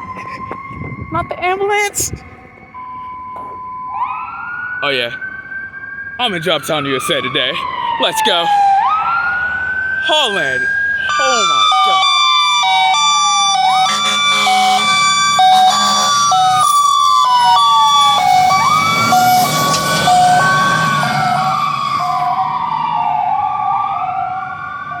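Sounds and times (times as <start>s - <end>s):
siren wailing up and down: 0.0s - 25.0s
two-tone siren: 0.0s - 25.0s
deep air horn blasts: 12.6s - 16.8s.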